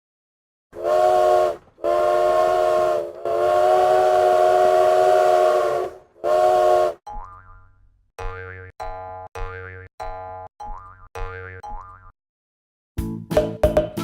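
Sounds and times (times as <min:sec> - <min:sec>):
steam train whistle blasts: 0:00.8 - 0:07.0.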